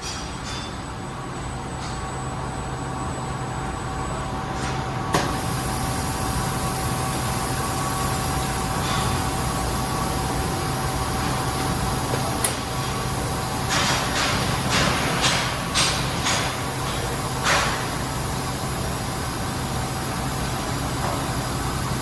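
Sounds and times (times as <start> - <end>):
metal cutting machine humming: 5.2 - 22.0.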